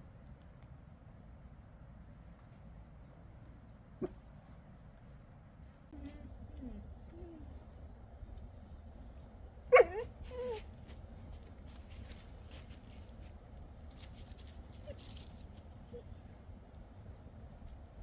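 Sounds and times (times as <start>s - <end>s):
faint rustling: 1.9s - 18.0s
dog yelping and whining: 9.3s - 10.7s, 14.8s - 15.2s, 15.8s - 16.2s.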